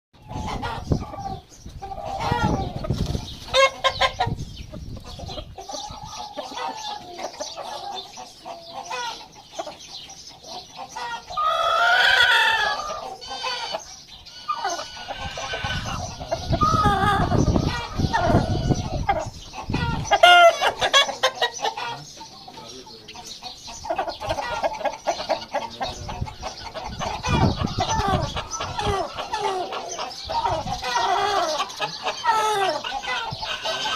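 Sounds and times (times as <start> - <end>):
chickens clucking: 0.2 - 33.9
rooster crowing: 11.4 - 19.0.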